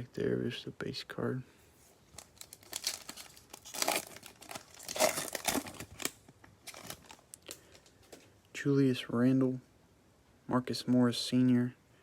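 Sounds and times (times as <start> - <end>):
wrapper crinkling and tearing: 2.1 - 7.9.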